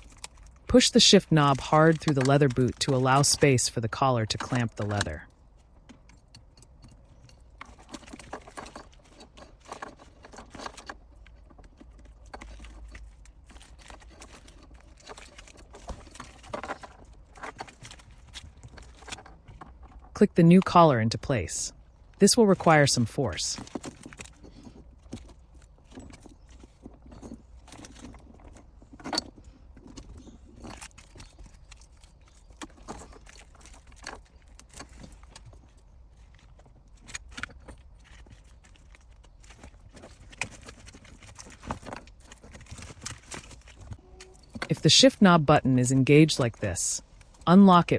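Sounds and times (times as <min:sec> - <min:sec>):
plastic parts clicking and knocking: 0:00.0 - 0:20.8, 0:21.8 - 0:44.8.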